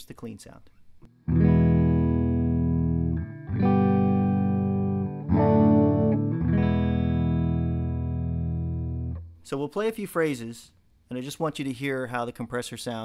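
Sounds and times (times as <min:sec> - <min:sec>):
electric guitar chords strummed: 0:01.2 - 0:09.4.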